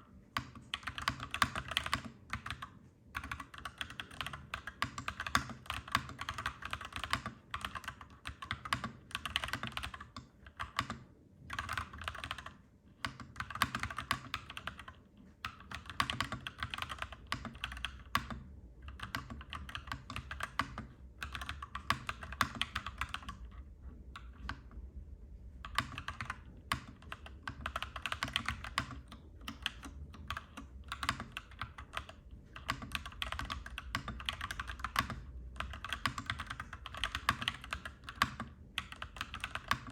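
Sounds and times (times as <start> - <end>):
mechanical keyboard typing: 0.3 - 24.7, 25.6 - 39.9
low steady rumble: 20.2 - 37.9.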